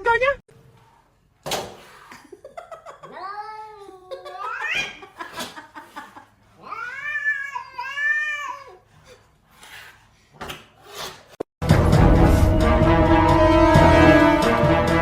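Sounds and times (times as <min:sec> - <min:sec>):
cat yowling: 0:06.6 - 0:08.8.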